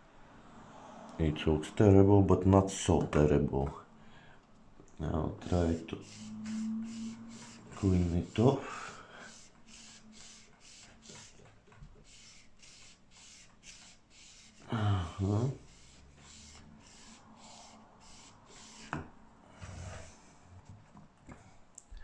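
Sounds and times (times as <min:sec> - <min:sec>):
rhythmic rubbing on rail: 0:05.5 - 0:08.6
person humming: 0:14.7 - 0:15.6.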